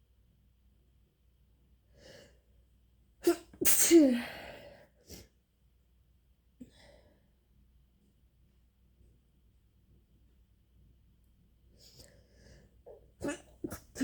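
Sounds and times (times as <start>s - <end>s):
person sneezing: 3.2s - 4.5s, 13.2s - 14.0s.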